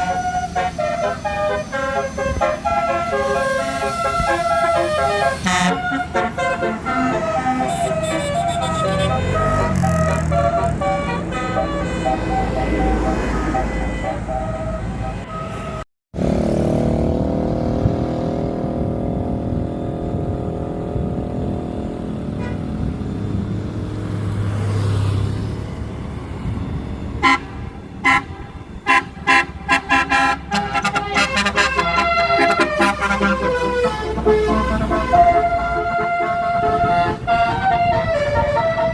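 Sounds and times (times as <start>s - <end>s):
bus musical air horn: 0.0s - 15.9s, 22.3s - 23.0s, 27.2s - 38.9s
vehicle engine running: 4.6s - 15.8s.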